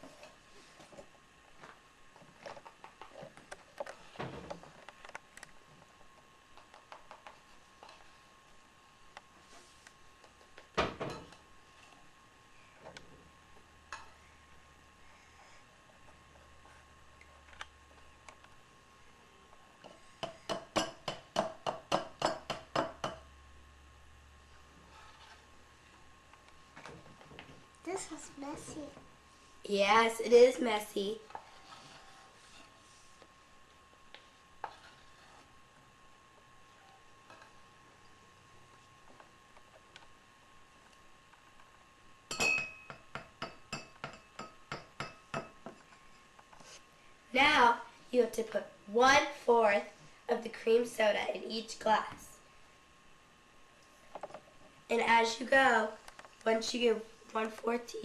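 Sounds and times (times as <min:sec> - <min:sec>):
utensil clinking against glasses: 0:42.3 - 0:43.0.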